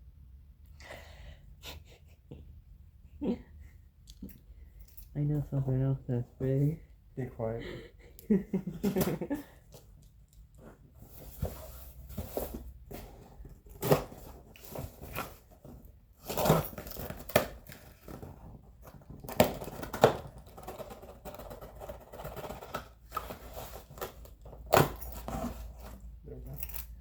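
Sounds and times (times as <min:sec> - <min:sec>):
packing rustling and crinkling: 0:11.0 - 0:26.8.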